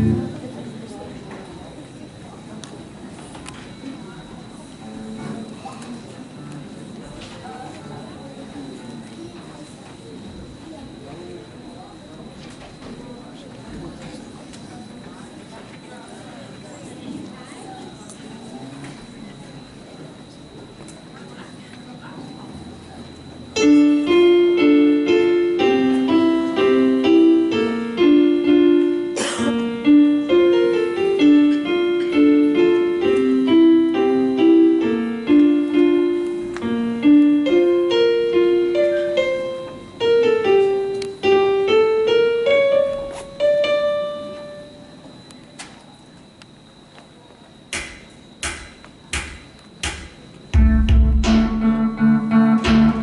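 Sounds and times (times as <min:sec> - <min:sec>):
solo piano broken chords: 0:00.0 - 0:00.9, 0:23.6 - 0:44.7, 0:50.6 - 0:53.0
sharp click: 0:47.7 - 0:50.2.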